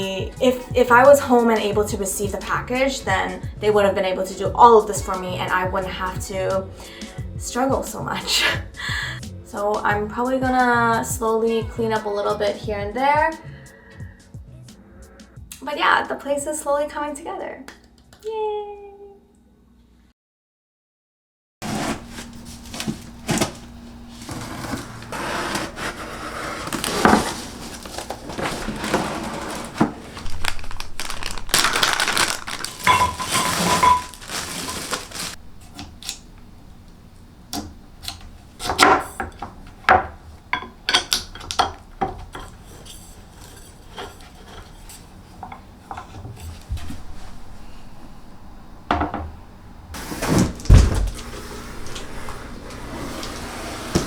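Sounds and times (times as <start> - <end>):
dishes clinking and clattering: 32.7 - 35.3.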